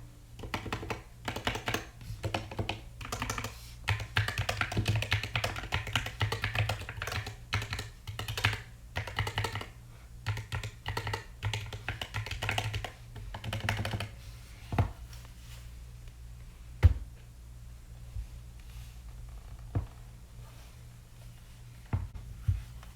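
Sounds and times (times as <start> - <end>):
mechanical keyboard typing: 0.4 - 14.1.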